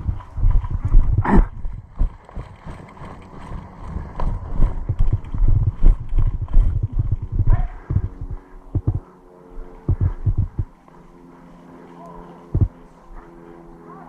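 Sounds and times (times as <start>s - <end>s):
low thumps and knocks: 0.0s - 2.8s, 3.9s - 9.0s, 9.8s - 10.7s
faint steady hum: 0.0s - 14.0s.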